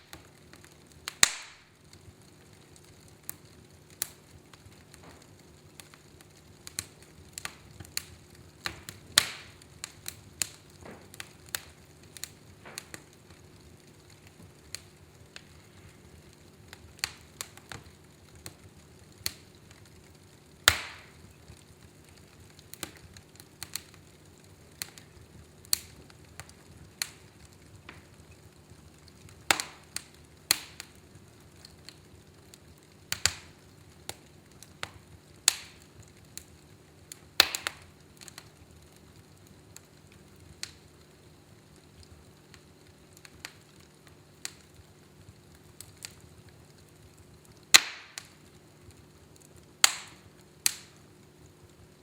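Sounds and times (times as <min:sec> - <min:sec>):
wood fire crackling and popping: 0:00.0 - 0:52.0.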